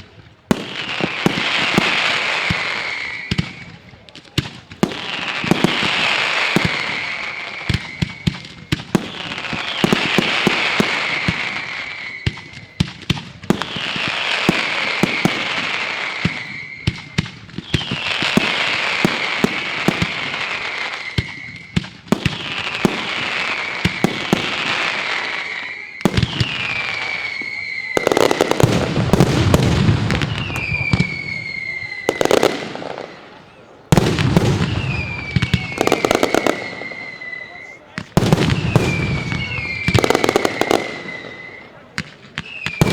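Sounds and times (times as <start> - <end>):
fireworks bangs and pops: 0.0 - 42.9
falling hissing whistle: 2.5 - 3.7, 6.6 - 8.4, 9.0 - 12.6, 14.3 - 19.2, 20.6 - 28.6, 30.2 - 33.6, 34.6 - 41.8, 42.4 - 42.9.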